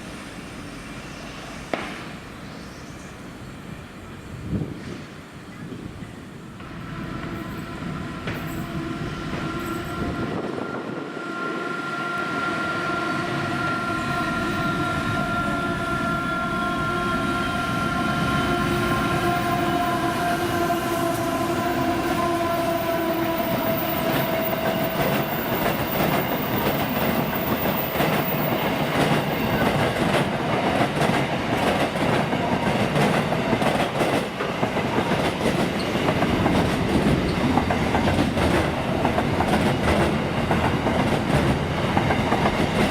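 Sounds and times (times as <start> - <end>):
train engine whine: 0.0 - 42.9
train wheels clicking over rail joints: 24.2 - 42.9.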